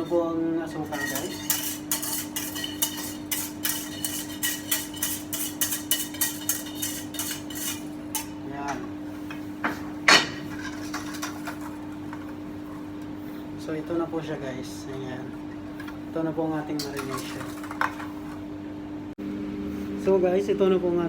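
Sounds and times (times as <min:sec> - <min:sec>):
steady low hum: 0:00.0 - 0:21.0
metal spoon clinking against pot: 0:00.7 - 0:08.4.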